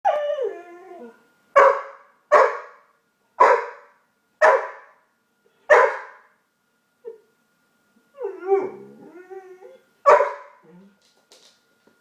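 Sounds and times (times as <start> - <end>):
dog barking: 1.6 - 2.8, 3.4 - 5.0, 5.7 - 6.3, 10.1 - 10.6.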